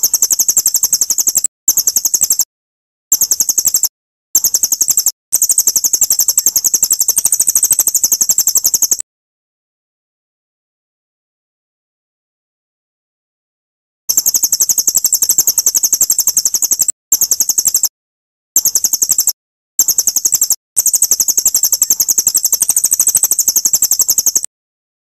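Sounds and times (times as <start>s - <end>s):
songbird trill: 0.0s - 2.5s, 3.1s - 9.0s, 14.1s - 17.9s, 18.6s - 24.5s.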